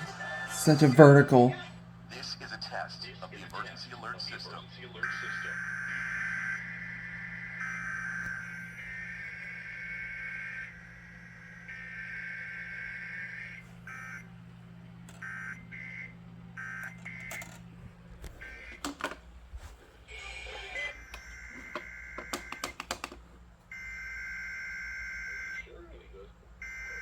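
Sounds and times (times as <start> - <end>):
sharp crackling clicks: 21.1 - 23.2.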